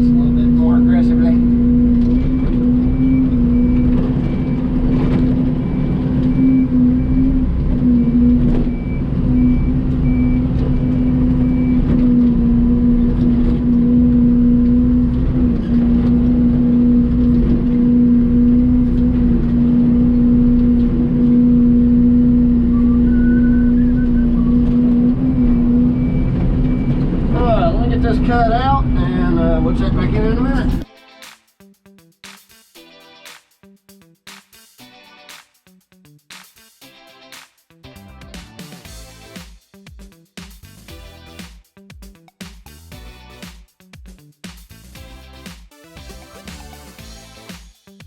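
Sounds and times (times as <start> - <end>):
diesel engine humming: 0.0 - 30.8
back-up alarm beeping: 1.7 - 12.2, 22.0 - 28.3.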